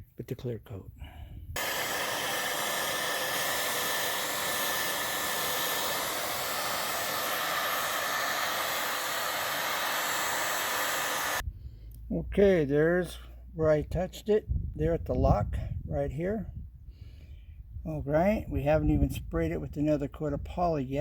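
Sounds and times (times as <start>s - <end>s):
hot-air blower hissing: 1.6s - 11.4s.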